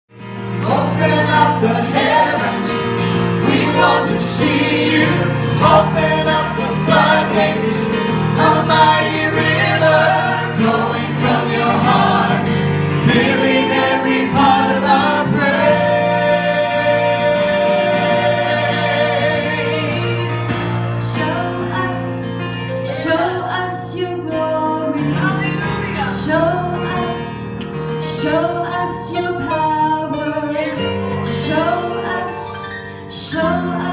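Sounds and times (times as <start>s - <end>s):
voices singing together: 0.6s - 22.2s.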